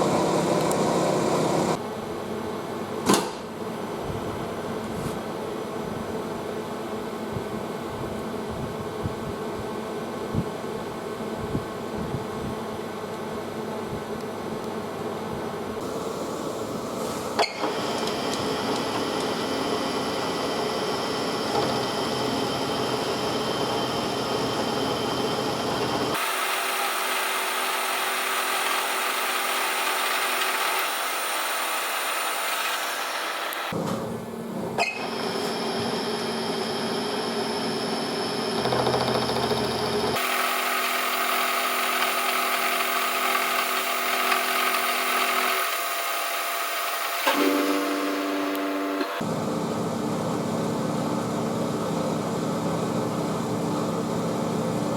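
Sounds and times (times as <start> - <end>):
lathe running with cutting whine: 0.0 - 1.8, 17.6 - 33.7, 35.0 - 49.4.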